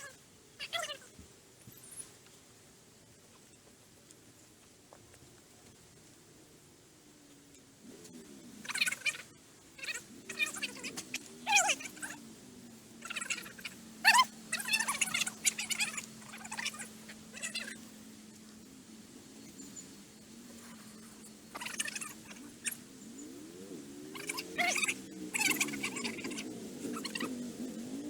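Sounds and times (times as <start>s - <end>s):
high scratchy animal calls: 0.0s - 2.2s, 8.1s - 12.3s, 13.0s - 18.0s, 20.5s - 22.9s, 24.1s - 27.4s.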